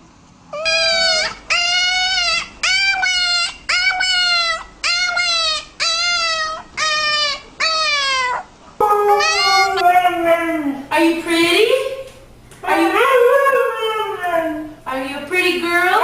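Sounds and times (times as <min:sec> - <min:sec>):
pet crying with high whines: 0:00.5 - 0:10.9.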